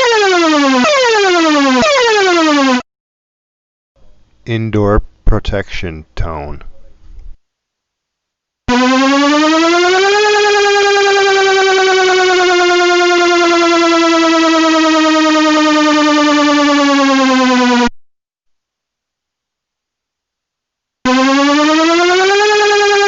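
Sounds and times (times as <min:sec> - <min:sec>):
electronic siren rising and falling: 0:00.0 - 0:02.8, 0:08.7 - 0:18.0, 0:21.1 - 0:23.0.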